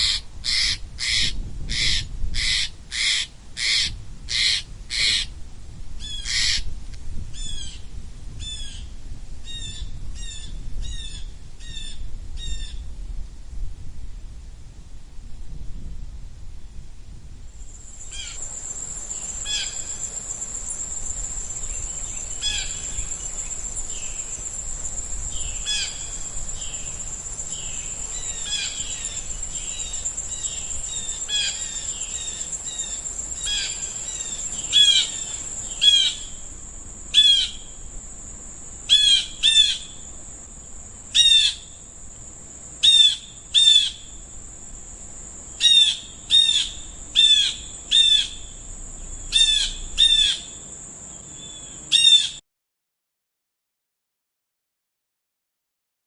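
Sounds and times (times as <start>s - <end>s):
blue jays calling harshly: 0.0s - 5.3s, 6.0s - 6.6s, 22.1s - 24.2s, 27.5s - 36.4s, 37.1s - 37.7s, 38.9s - 40.0s, 41.2s - 41.7s, 45.6s - 48.4s, 49.3s - 50.6s, 51.4s - 52.4s
high-pitched insect drone: 17.6s - 52.3s.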